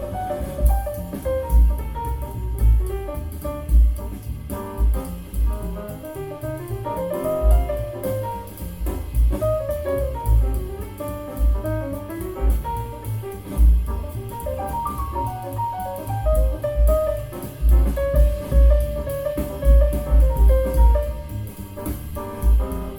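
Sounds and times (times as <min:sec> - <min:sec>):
deep bass notes: 0:00.0 - 0:22.9
jazz through speakers: 0:00.0 - 0:22.9.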